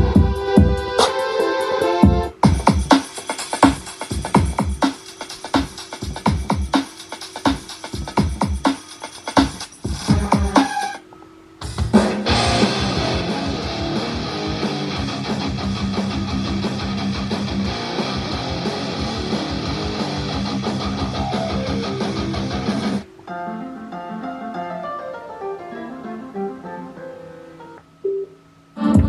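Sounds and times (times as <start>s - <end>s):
guitar piece: 10.1s - 29.0s
rock music with electric guitar: 11.6s - 24.1s.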